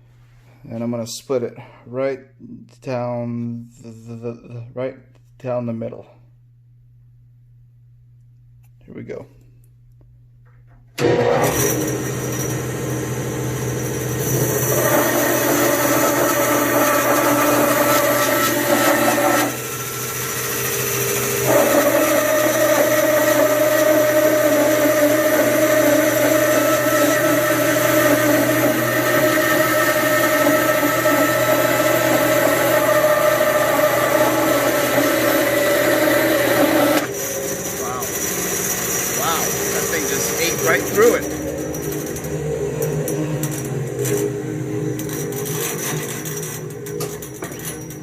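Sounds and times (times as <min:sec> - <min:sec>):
bandsaw cutting wood: 0:11.0 - 0:46.4.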